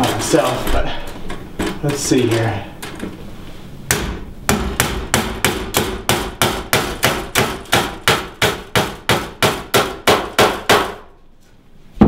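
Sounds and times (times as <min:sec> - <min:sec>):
hammer striking nail into wood: 0:03.9 - 0:11.1.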